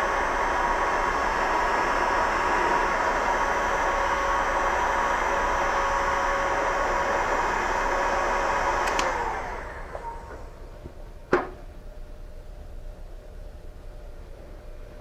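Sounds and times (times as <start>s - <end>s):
fan winding down: 0.0s - 11.7s
heat gun blowing: 7.2s - 10.2s
heat gun switch click: 8.8s - 9.2s.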